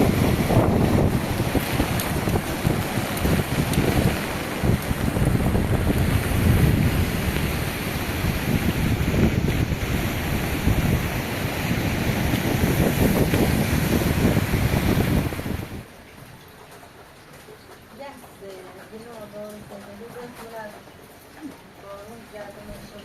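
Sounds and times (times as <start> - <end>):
heavy rain hissing: 0.0 - 15.9
wind buffeting microphone: 0.0 - 16.4.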